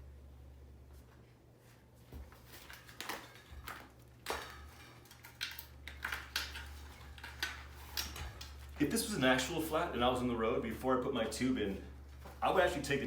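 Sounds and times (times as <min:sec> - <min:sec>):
steady low hum: 0:00.0 - 0:13.0
hands clicking and rustling: 0:02.2 - 0:08.9.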